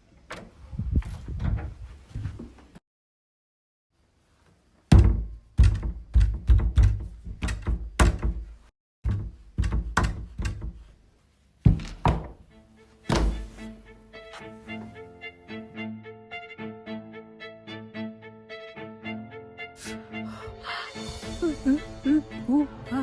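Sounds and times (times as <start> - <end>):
heavy thuds and knocks: 4.9 - 10.9, 11.6 - 12.4, 13.1 - 13.6
violin melody: 12.4 - 23.0.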